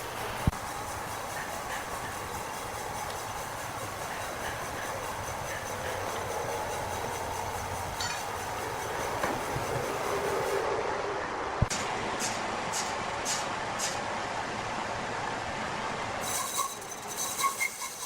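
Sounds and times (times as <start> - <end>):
heavy machinery rumble and clatter: 0.0 - 10.7.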